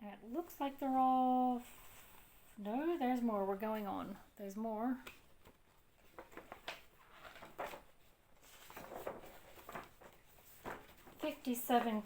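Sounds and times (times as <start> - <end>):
glossy paper pages rustling: 5.1 - 12.0.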